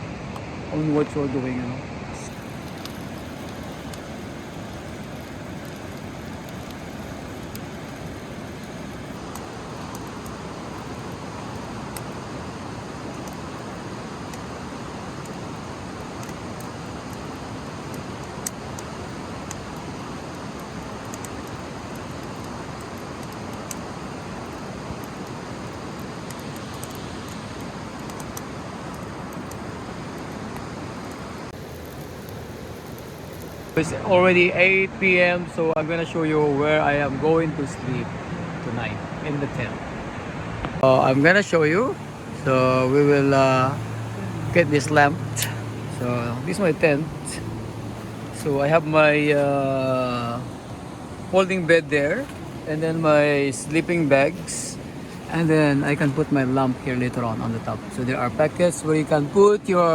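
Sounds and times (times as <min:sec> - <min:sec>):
sharp clicks: 0:02.3 - 0:33.8, 0:44.6 - 0:49.5
stream water rushing over rocks: 0:02.3 - 0:35.3, 0:39.2 - 0:59.9.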